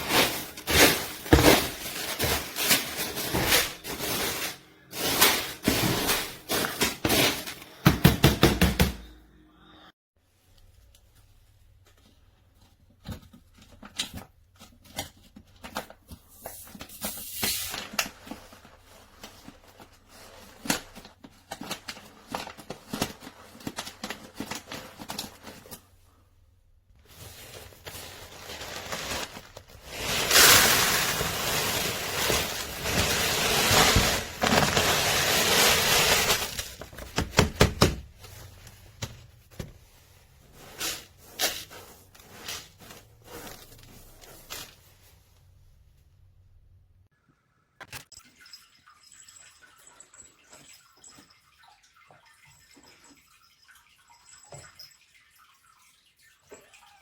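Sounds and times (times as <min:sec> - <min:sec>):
cat litter pellets rattling: 0:27.0 - 0:37.4.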